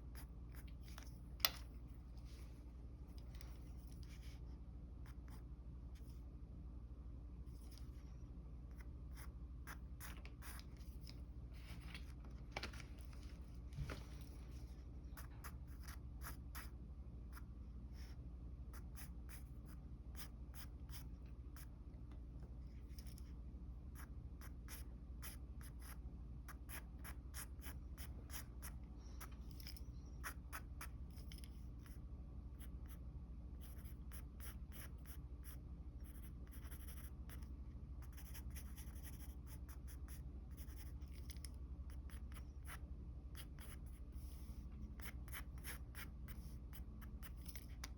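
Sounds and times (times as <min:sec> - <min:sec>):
faint low hum: 0:00.0 - 0:47.9
pencil scratching on paper: 0:33.6 - 0:41.2.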